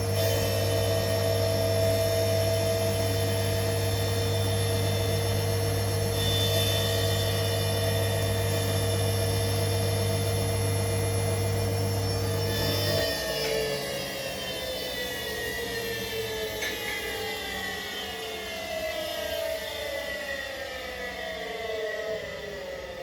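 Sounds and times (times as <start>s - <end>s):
washing machine motor humming: 0.0s - 14.2s
high whining tones: 0.0s - 15.1s.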